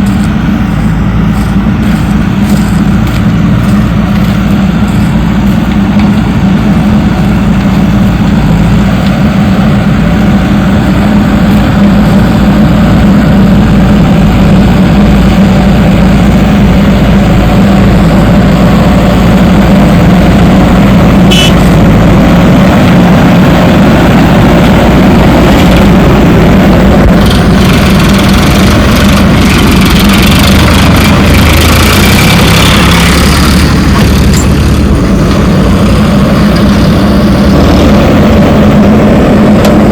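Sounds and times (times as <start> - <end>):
deeper engine note with hiss: 0.0 - 39.9
heavy diesel engine running: 0.0 - 39.9.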